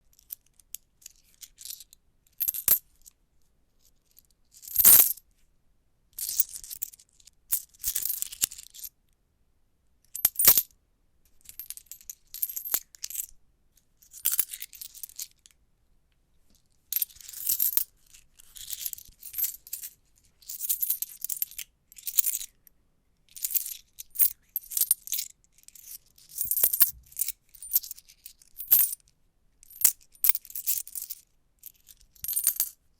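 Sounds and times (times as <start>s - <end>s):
coins jingling in a hand: 4.8s - 5.2s, 16.9s - 17.8s, 25.8s - 28.9s, 29.8s - 32.7s.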